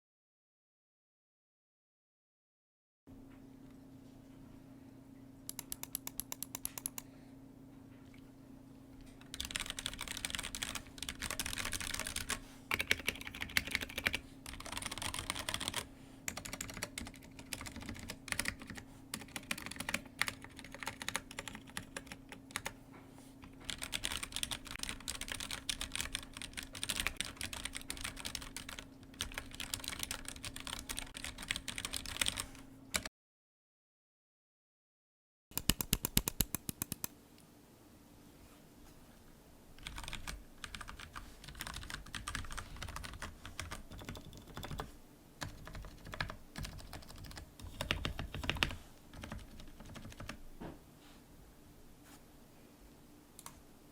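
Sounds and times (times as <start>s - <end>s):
steady low hum: 3.1s - 33.1s
mechanical keyboard typing: 5.5s - 7.0s, 9.2s - 22.8s, 23.4s - 33.1s, 35.5s - 37.1s, 39.8s - 50.4s.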